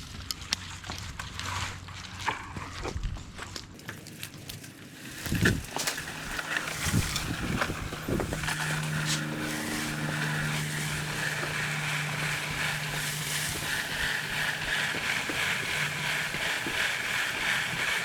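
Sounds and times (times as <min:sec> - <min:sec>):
engine running steadily: 0:00.0 - 0:18.0.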